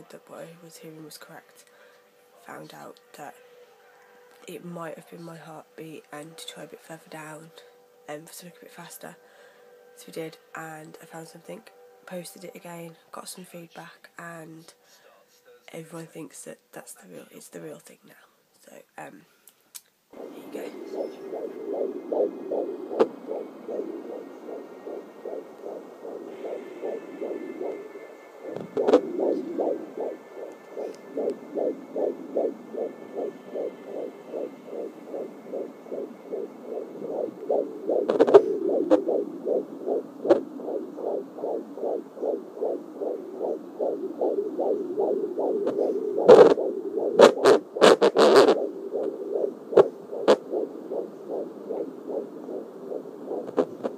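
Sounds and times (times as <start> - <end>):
fuzzy hiss: 0.0 - 53.9
doppler heartbeat whooshing pulses: 20.2 - 53.9
scratchy crackles: 20.2 - 53.9.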